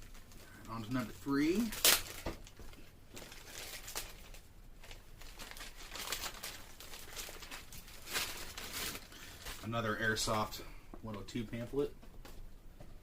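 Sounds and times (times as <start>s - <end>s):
packaging bag crinkling: 0.0s - 10.0s.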